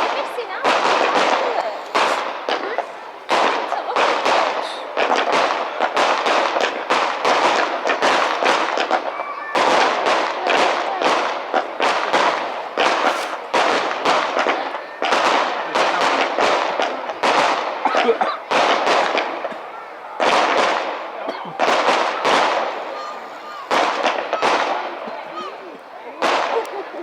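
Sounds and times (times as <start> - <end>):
fireworks bangs and crackles: 0.0 - 27.0.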